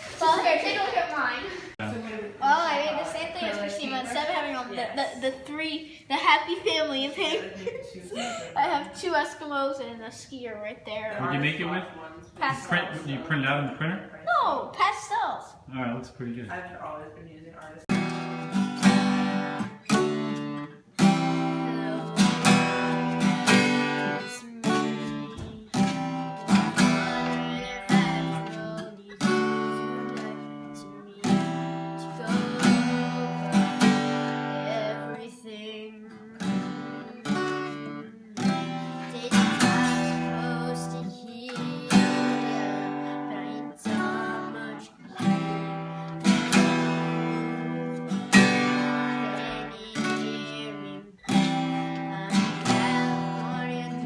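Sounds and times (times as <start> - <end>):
acoustic guitar strumming: 17.9 - 54.0.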